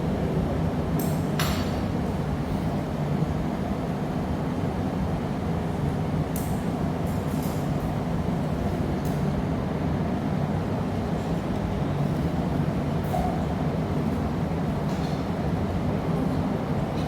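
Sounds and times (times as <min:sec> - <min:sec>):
low roar of gas furnace: 0:00.0 - 0:17.0.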